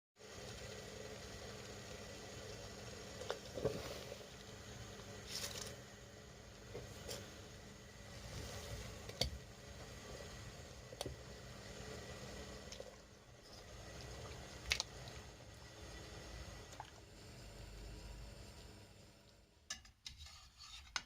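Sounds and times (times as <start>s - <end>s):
low steady hum: 0.2s - 19.7s.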